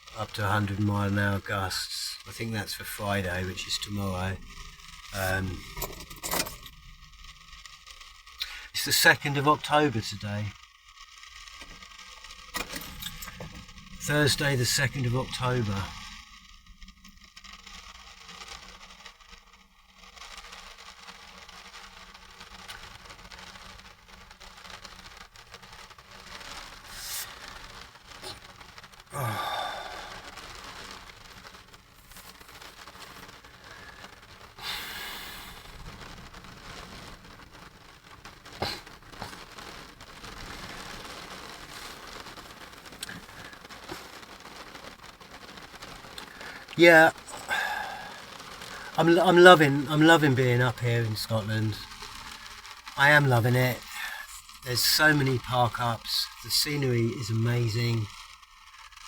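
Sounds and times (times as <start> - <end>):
steady background hiss: 0.0 - 59.0
rustling and scraping handling: 3.5 - 6.8, 11.4 - 16.3, 30.1 - 47.5.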